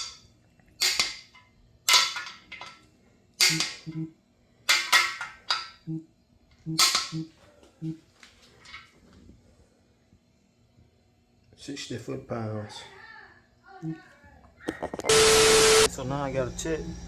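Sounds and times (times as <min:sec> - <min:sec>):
torque wrench clicking: 0:00.8 - 0:01.2, 0:03.4 - 0:04.0.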